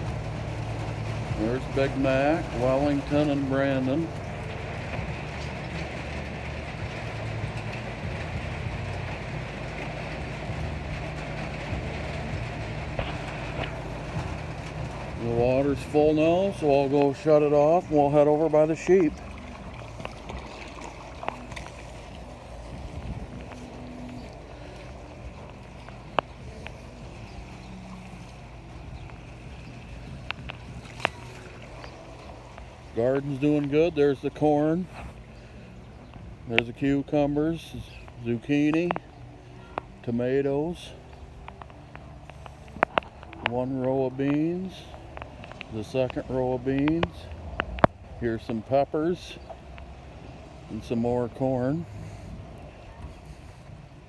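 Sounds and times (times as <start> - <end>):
rain: 0.0 - 34.2, 40.8 - 48.2, 49.3 - 50.8, 51.7 - 54.0
water running into tank: 0.0 - 36.5
wind buffeting microphone: 0.0 - 36.7, 49.4 - 54.0
low steady hum: 0.0 - 54.0.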